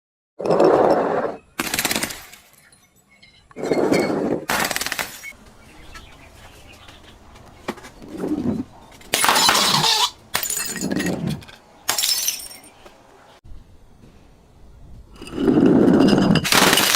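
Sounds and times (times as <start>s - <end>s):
glass shattering: 9.1s - 11.2s, 11.9s - 12.8s.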